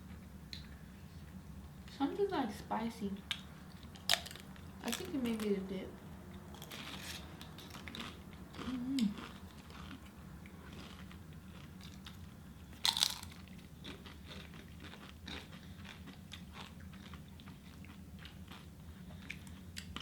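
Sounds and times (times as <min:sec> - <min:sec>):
crunchy food chewing: 0:03.3 - 0:05.5, 0:06.5 - 0:20.0
person humming: 0:08.7 - 0:09.1.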